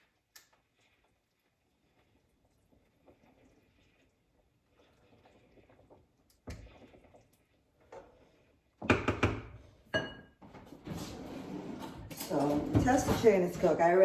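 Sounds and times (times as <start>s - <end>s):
utensils knocking against cookware: 12.1s - 13.9s.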